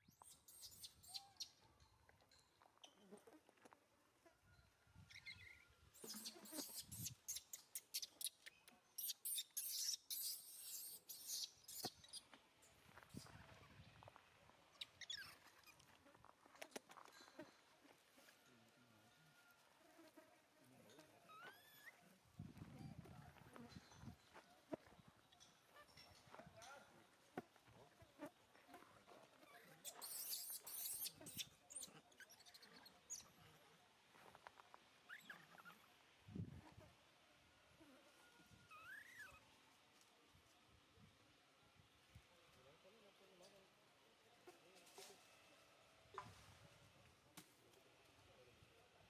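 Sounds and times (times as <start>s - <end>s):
baby monkey squealing: 5.1s - 8.4s, 9.0s - 12.2s, 29.8s - 32.8s.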